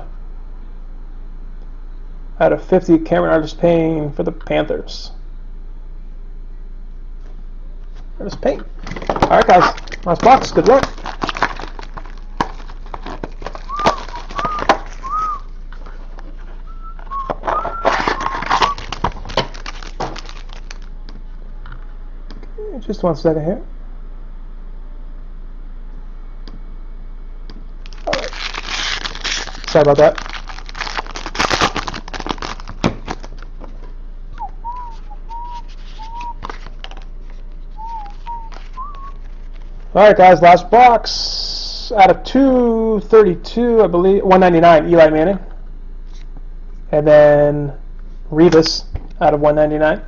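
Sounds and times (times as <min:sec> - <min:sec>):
handling crackles and clicks: 0:08.8 - 0:16.4, 0:17.0 - 0:20.9
plastic wrapping crinkling: 0:08.8 - 0:20.9, 0:27.8 - 0:33.9, 0:34.6 - 0:39.9
person whistling: 0:13.6 - 0:15.5, 0:16.6 - 0:18.9, 0:34.4 - 0:36.4, 0:37.8 - 0:39.2.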